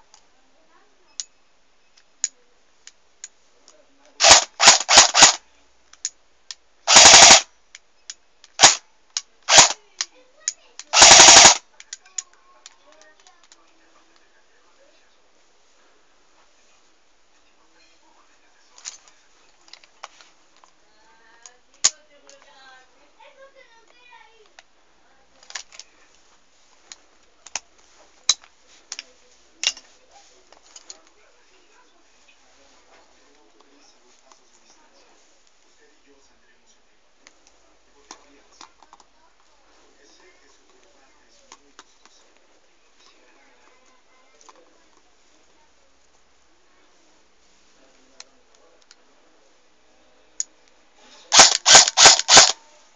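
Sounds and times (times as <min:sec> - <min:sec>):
airsoft rifle shots: 0:04.2 - 0:05.4, 0:06.9 - 0:07.5, 0:08.6 - 0:08.8, 0:09.5 - 0:09.8, 0:10.9 - 0:11.6, 0:51.3 - 0:52.6
plastic rifle clicks: 0:04.2 - 0:13.7, 0:51.3 - 0:52.6.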